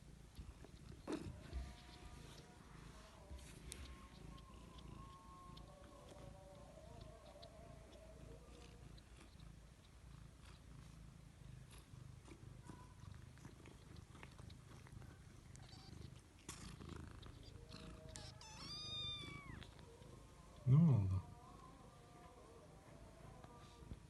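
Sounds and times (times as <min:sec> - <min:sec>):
cat purring faintly: 0:00.0 - 0:24.0
kitten mewing: 0:17.9 - 0:19.8.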